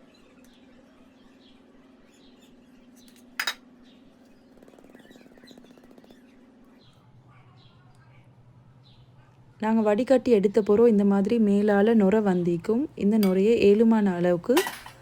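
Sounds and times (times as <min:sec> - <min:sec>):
kitchen utensil clink: 0:03.4 - 0:03.6, 0:14.5 - 0:15.0
faint bird chirps: 0:03.8 - 0:08.2.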